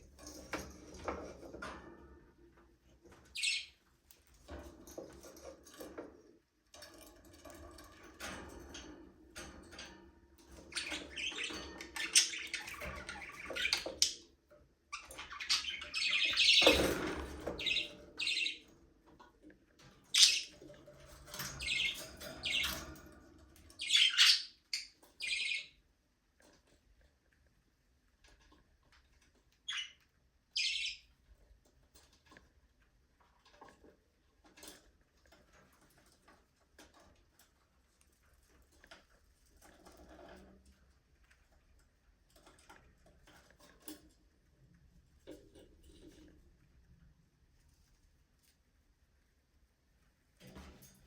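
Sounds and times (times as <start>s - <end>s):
budgerigars chirping: 23.8s - 24.6s.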